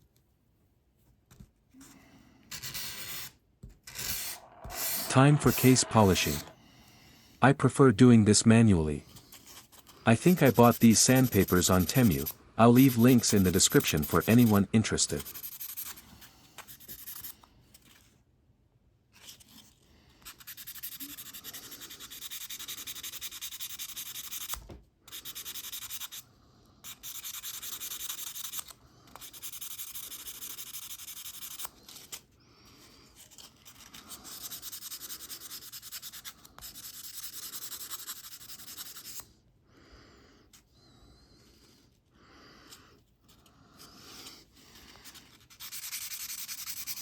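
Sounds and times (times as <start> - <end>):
sandpaper rubbing on metal: 3.9 - 6.5, 10.3 - 14.6, 20.4 - 24.5, 33.8 - 39.2, 45.4 - 47.0.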